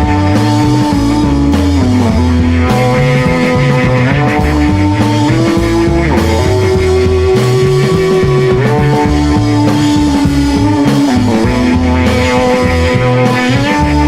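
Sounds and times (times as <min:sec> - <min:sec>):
psychedelic rock instrumental: 0:00.0 - 0:14.0.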